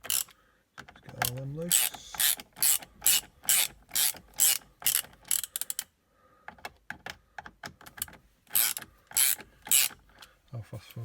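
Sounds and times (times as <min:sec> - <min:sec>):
ratchet tool clicking: 0:00.0 - 0:00.3, 0:01.7 - 0:05.9, 0:08.0 - 0:10.0.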